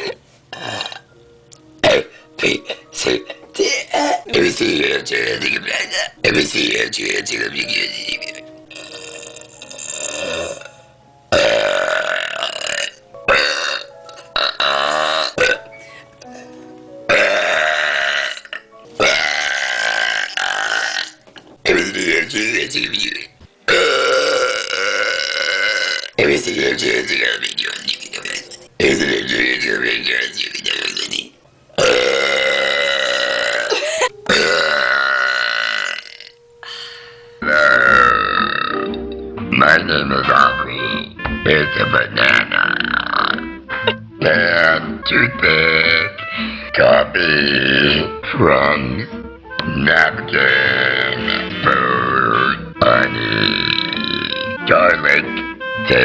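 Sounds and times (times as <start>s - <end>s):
person belching loudly: 0.0s - 1.1s, 1.8s - 6.8s, 7.6s - 15.7s, 17.1s - 22.4s, 23.0s - 29.4s, 30.6s - 36.4s, 37.4s - 39.1s, 40.8s - 41.2s, 42.1s - 46.2s, 50.4s - 54.6s
voiced burps: 0.0s - 1.1s, 1.8s - 5.2s, 5.8s - 6.2s, 7.6s - 15.8s, 17.1s - 22.1s, 23.1s - 26.3s, 27.4s - 28.7s, 30.6s - 36.4s, 37.4s - 39.2s, 42.2s - 46.2s, 50.4s - 54.6s.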